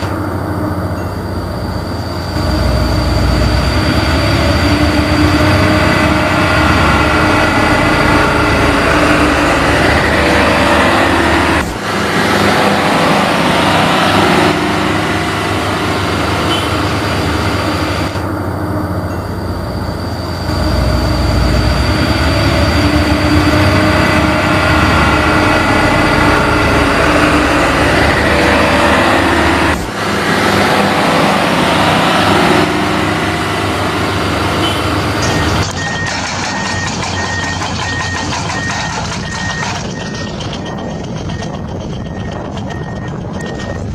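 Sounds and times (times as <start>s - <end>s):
thin high whine: 0.0s - 11.8s, 15.6s - 30.0s.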